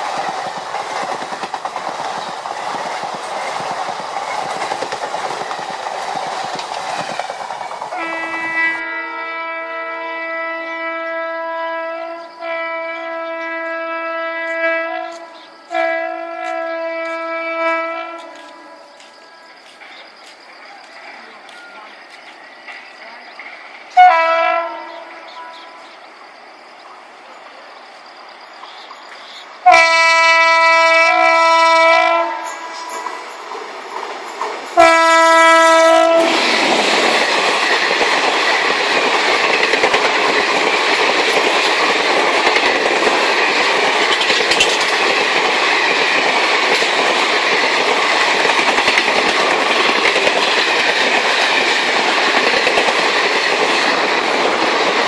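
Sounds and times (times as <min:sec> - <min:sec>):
train running on tracks: 0:00.0 - 0:55.0
locomotive horn: 0:07.9 - 0:18.8, 0:24.0 - 0:25.9, 0:29.6 - 0:33.0, 0:34.8 - 0:36.5.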